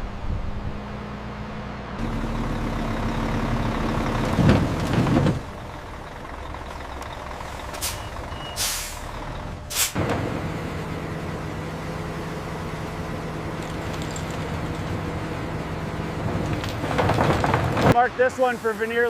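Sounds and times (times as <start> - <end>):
industrial machinery humming: 0.0 - 19.0
heavy rumbling clatter: 2.0 - 11.5, 13.2 - 18.2
compressed air hissing: 7.7 - 9.1, 9.7 - 10.0.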